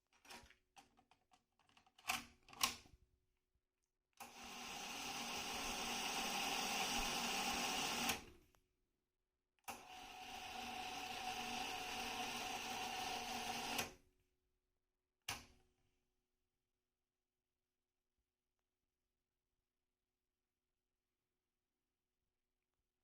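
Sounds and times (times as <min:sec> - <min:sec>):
cassette tape fast winding whir: 0:04.2 - 0:08.3, 0:09.7 - 0:13.9.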